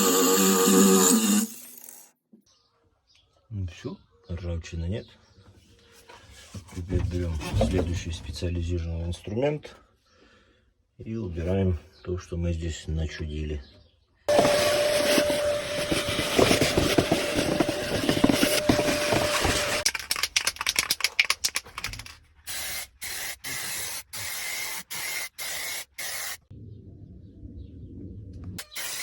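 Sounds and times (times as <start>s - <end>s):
compressed air blow gun hissing: 22.5s - 26.4s.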